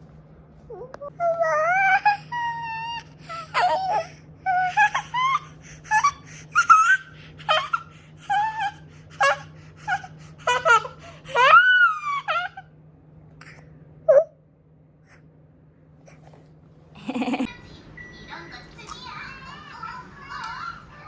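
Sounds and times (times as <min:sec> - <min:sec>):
toddler wailing: 0:01.0 - 0:12.6
toddler squealing and crying: 0:01.1 - 0:12.6.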